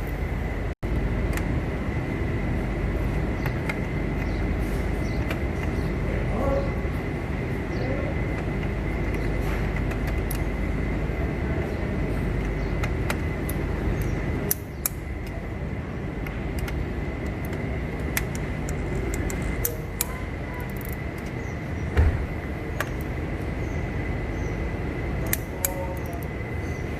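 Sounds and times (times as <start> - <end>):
workshop background noise: 0.0 - 26.9
small metallic clicks: 12.4 - 15.4, 16.2 - 21.4, 25.2 - 26.4.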